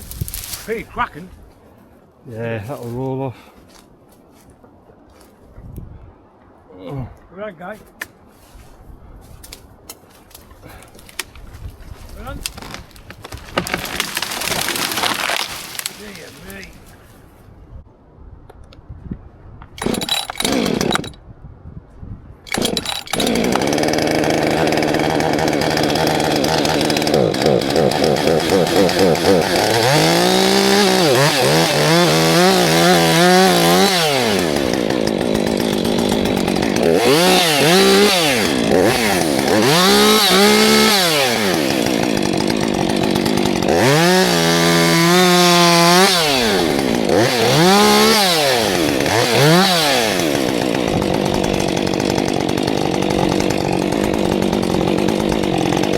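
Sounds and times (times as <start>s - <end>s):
chainsaw revving cutting wood: 13.5s - 16.2s, 19.8s - 21.2s, 22.5s - 55.9s.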